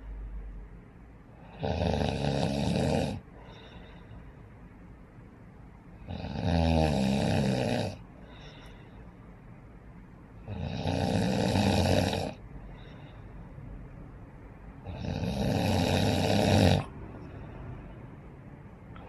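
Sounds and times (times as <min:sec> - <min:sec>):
loud snoring: 0:01.5 - 0:03.2, 0:06.1 - 0:08.0, 0:10.5 - 0:12.4, 0:14.8 - 0:16.9
soft breath out: 0:03.3 - 0:04.6, 0:08.1 - 0:09.4, 0:12.5 - 0:13.8.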